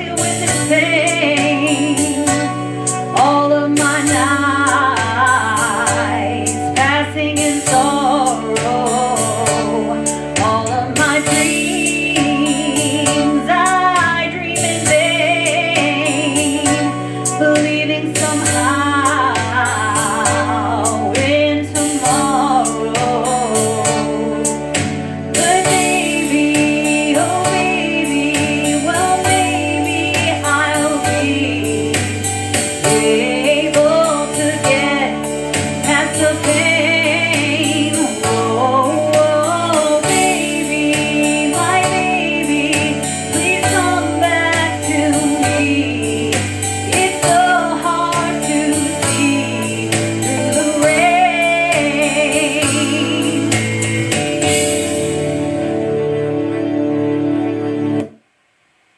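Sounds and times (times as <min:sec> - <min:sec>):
band playing bass and percussion: 0:39.2 - 0:55.5.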